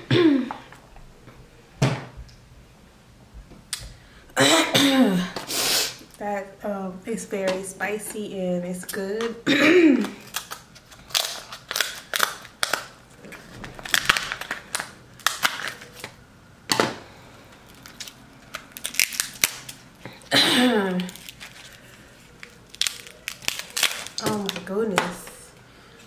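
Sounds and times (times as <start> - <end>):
shellfish shells cracking: 10.0 - 16.2, 17.5 - 20.3, 21.0 - 24.6.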